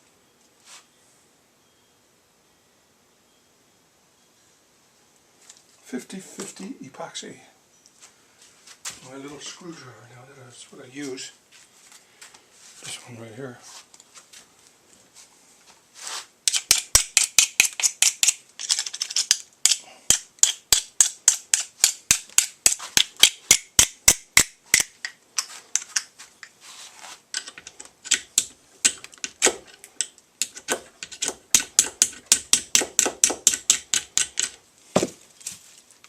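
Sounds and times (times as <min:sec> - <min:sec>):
screwdriver clicking and tapping: 0:16.5 - 0:18.4, 0:19.2 - 0:26.1, 0:27.4 - 0:34.6.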